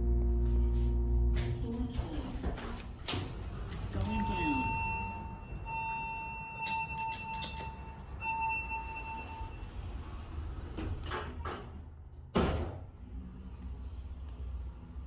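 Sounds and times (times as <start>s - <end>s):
elevator doors sliding shut: 1.3s - 12.7s
elevator beep tone: 4.0s - 10.0s.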